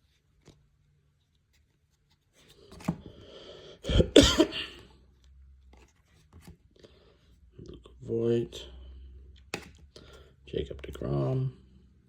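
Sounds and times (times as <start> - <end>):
man coughing: 3.8 - 4.8.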